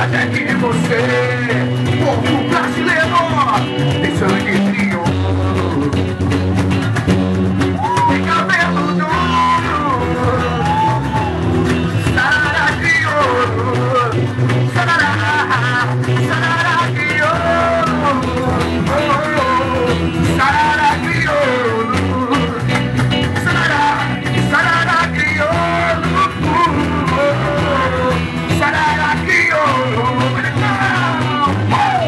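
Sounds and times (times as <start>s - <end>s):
instrumental band music: 0.0s - 32.0s.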